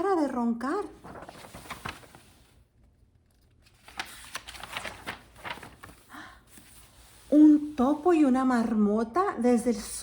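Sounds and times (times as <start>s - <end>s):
faint clicks and rustles: 1.0s - 7.0s.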